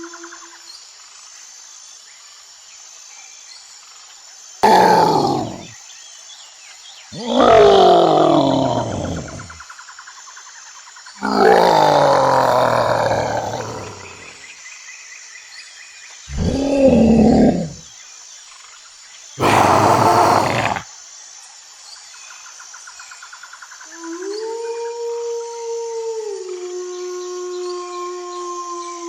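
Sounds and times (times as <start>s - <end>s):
animal call: 4.6s - 5.7s, 7.2s - 9.6s, 11.2s - 14.4s, 16.3s - 17.8s, 19.4s - 20.8s
animal roar: 4.6s - 5.7s, 7.2s - 9.6s, 11.2s - 14.4s, 16.3s - 17.8s, 19.4s - 20.8s
harsh animal call: 4.6s - 5.7s, 7.2s - 9.6s, 11.2s - 14.4s, 16.3s - 17.8s, 19.4s - 20.8s
held animal howl: 4.6s - 5.7s, 7.2s - 9.6s, 11.2s - 14.3s, 16.3s - 17.8s, 19.4s - 20.8s.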